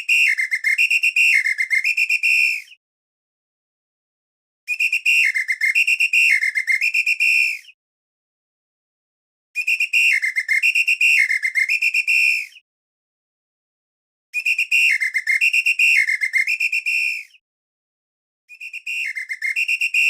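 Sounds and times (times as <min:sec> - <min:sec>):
whistle blasts with trill: 0:18.6 - 0:20.0.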